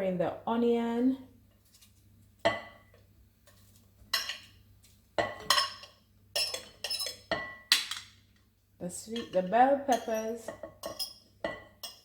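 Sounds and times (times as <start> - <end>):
utensil clinking against dishes: 5.2 - 8.0, 9.1 - 12.0.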